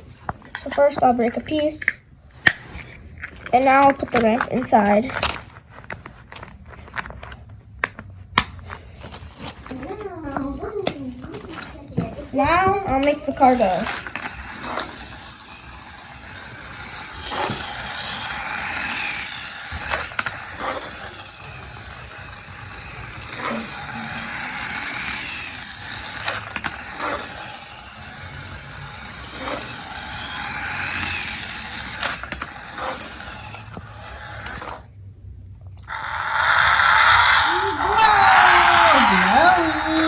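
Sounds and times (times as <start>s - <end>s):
wheels clicking on plastic track: 0.0s - 7.4s, 8.4s - 34.9s, 35.8s - 40.0s
toy car motor whining: 8.9s - 34.9s, 35.8s - 40.0s.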